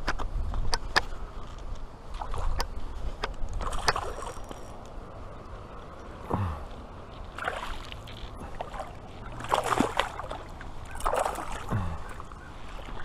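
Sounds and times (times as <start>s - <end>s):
water splashing: 3.6s - 4.8s, 6.3s - 13.0s.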